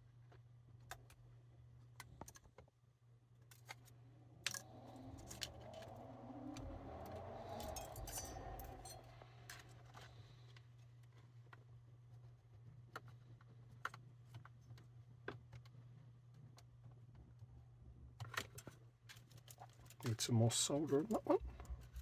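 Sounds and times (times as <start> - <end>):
steady low hum: 3.9 - 10.6.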